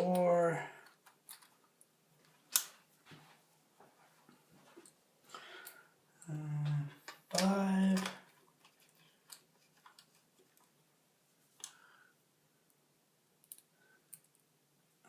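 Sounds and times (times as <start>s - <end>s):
screwdriver and screws clicking: 0.8s - 1.6s.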